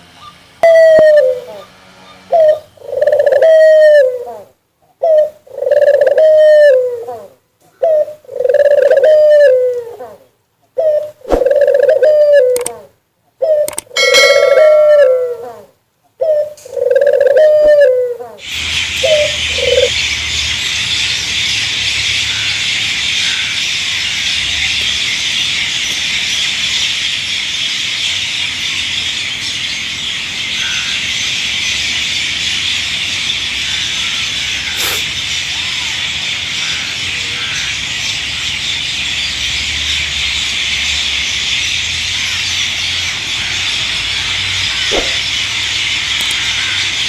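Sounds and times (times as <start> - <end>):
dove cooing: 0.2 - 20.0, 44.9 - 45.3
high-pitched hiss: 34.8 - 35.1.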